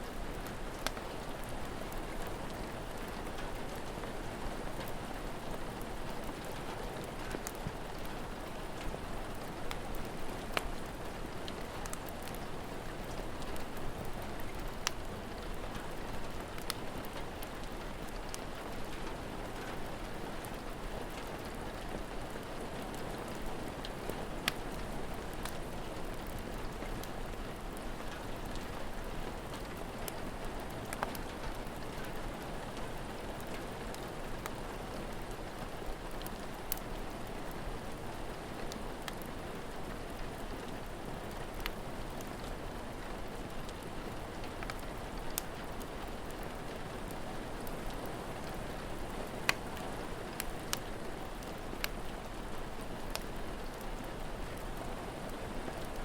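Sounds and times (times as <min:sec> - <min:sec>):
steady rain falling: 0:00.0 - 0:56.0
crackling fire pops: 0:24.3 - 0:25.6, 0:49.4 - 0:52.0, 0:53.1 - 0:53.8.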